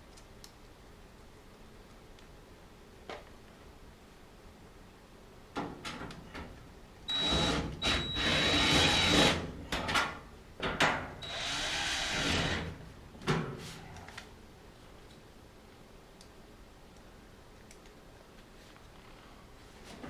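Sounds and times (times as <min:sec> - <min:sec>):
power drill motor whine: 0:07.1 - 0:09.4, 0:11.2 - 0:12.6.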